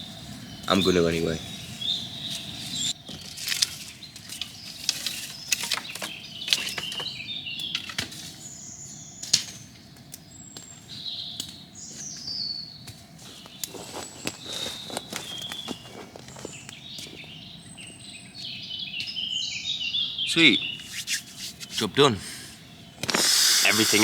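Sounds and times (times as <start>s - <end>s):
small birds singing: 0.0s - 24.0s
stones knocking and scraping: 13.4s - 17.2s.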